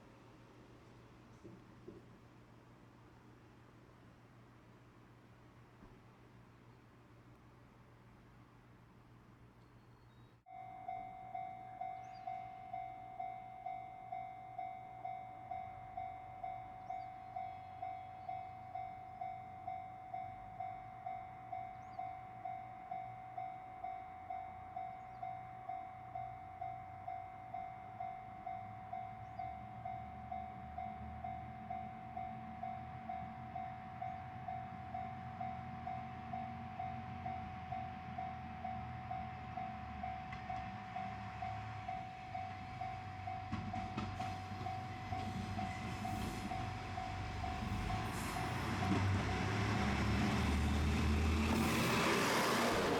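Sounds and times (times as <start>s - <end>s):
low rumble of approaching train: 0.0s - 52.9s
level crossing warning bell ringing: 10.5s - 49.3s.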